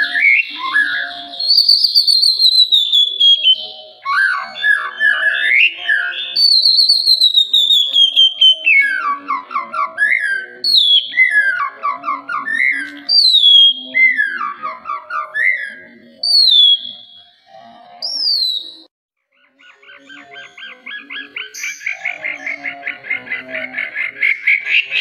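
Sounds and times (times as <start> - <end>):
bird whistling song: 0.0 - 23.6
rapid bird chattering: 0.0 - 25.0.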